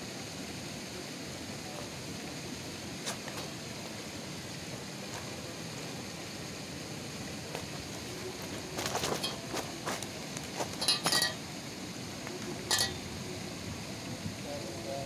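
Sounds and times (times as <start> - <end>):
steady background hiss: 0.0 - 15.0
sharp clinks and clicks: 10.8 - 11.4, 12.7 - 13.1.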